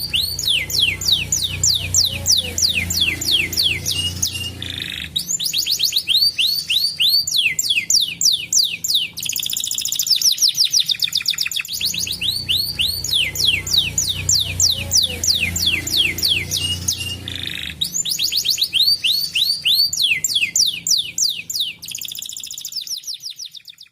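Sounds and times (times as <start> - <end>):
canary singing: 0.0 - 23.9.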